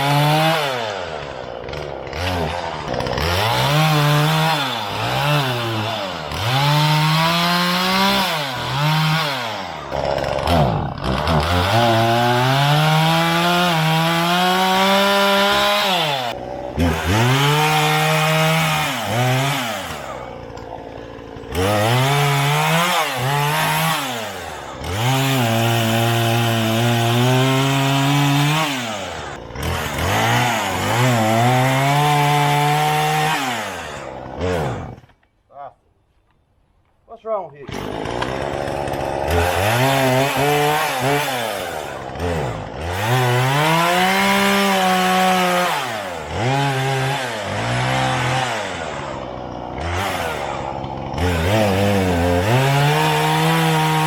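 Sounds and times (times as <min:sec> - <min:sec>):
chainsaw revving: 0:00.0 - 0:35.2, 0:37.6 - 0:54.0.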